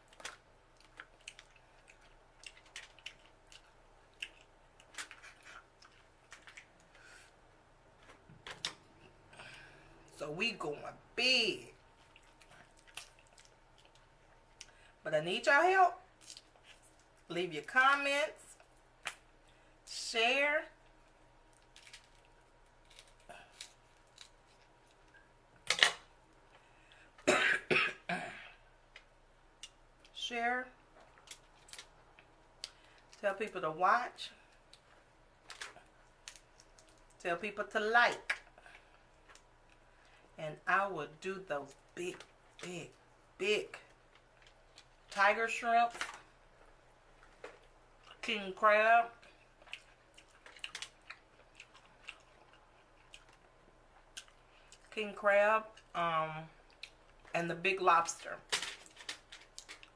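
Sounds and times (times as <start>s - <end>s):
person chewing and smacking lips: 0.0s - 7.0s, 12.0s - 14.8s, 49.2s - 55.0s.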